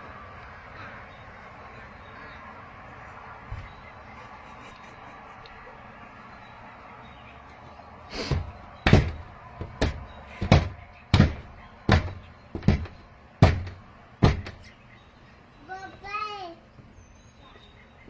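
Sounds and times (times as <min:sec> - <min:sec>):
dull thumps: 0:08.2 - 0:14.7.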